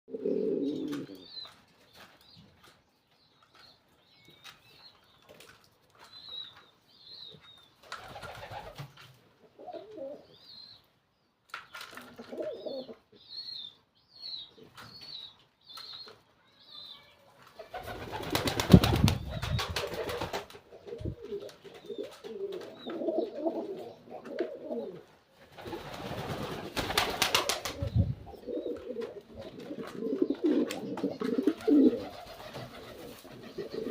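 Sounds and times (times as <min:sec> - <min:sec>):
pigeons cooing: 0:00.1 - 0:01.4, 0:09.4 - 0:10.4, 0:12.0 - 0:13.1, 0:17.7 - 0:33.9.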